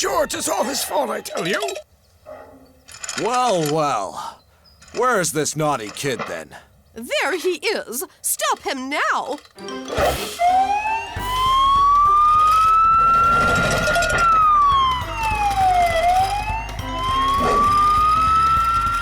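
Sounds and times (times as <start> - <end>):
cartoon siren wailing: 10.4 - 19.0.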